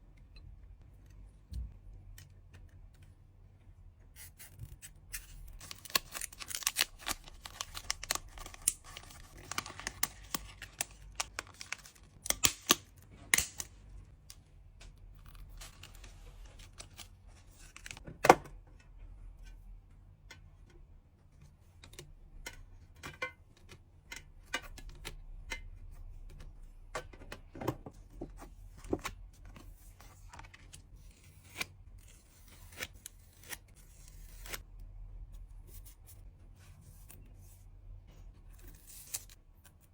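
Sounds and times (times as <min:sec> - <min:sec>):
plastic and paper crinkling: 0:05.6 - 0:12.7.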